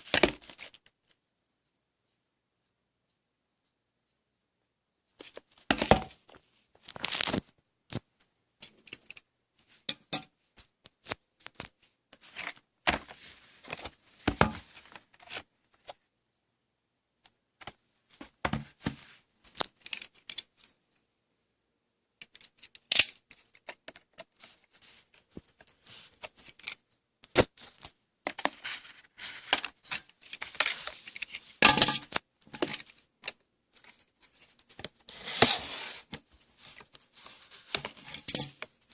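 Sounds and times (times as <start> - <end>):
packaging rustling and crinkling: 6.8 - 7.5.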